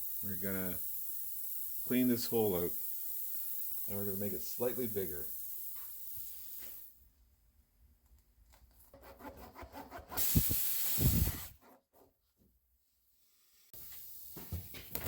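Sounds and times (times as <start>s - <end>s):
air hissing from tire: 0.0s - 7.0s, 10.2s - 11.6s, 13.3s - 14.9s.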